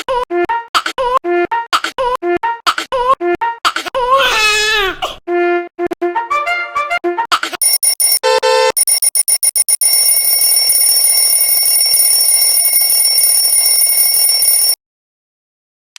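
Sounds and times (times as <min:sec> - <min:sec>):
continuous high ringing: 0:08.8 - 0:14.8.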